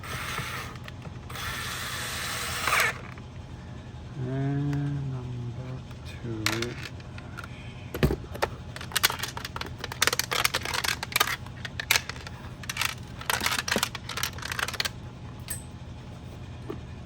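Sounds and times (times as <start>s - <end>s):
hard plastic parts clicking and scraping: 0.0s - 1.6s, 2.6s - 3.2s, 5.9s - 15.0s.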